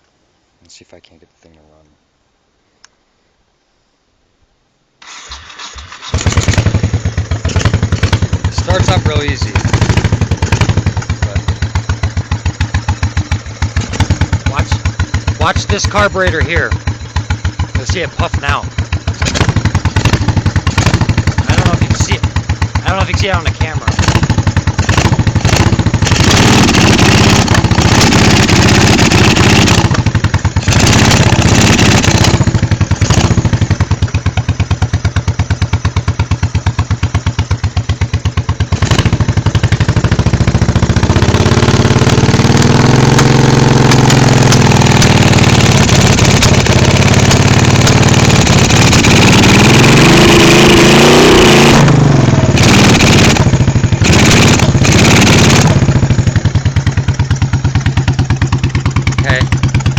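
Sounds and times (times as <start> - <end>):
carburetor blowback: 5.0 - 12.3, 13.0 - 34.0, 38.7 - 56.4
motorcycle engine misfiring: 5.0 - 59.9.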